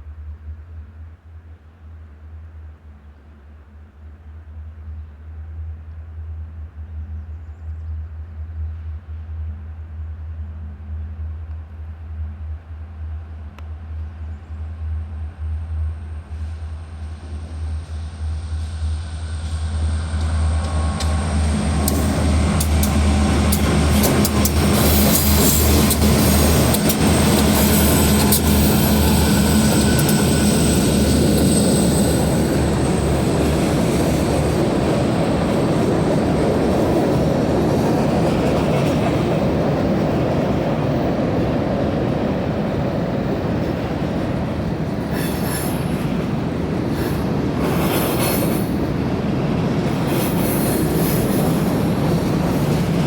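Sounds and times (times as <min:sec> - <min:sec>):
train wheels rumbling over rails: 0:00.0 - 0:53.0
train clattering: 0:15.8 - 0:53.0.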